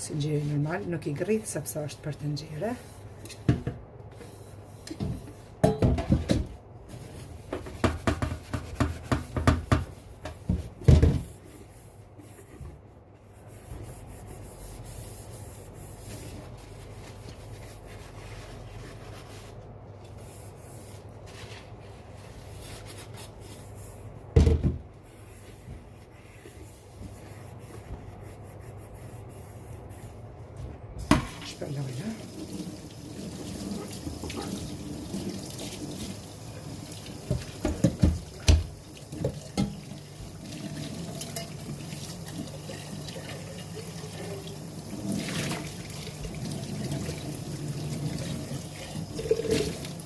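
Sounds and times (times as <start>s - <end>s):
sponge scrubbing a kettle: 0.0s - 1.6s, 6.9s - 19.6s, 31.3s - 50.0s
knock: 7.6s - 11.2s.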